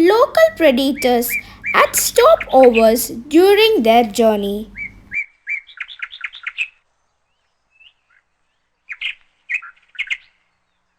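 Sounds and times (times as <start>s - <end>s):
small bird chirping: 0.0s - 5.2s.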